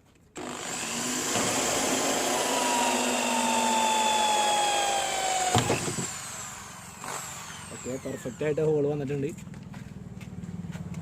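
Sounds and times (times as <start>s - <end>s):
electric drill boring: 0.4s - 8.9s.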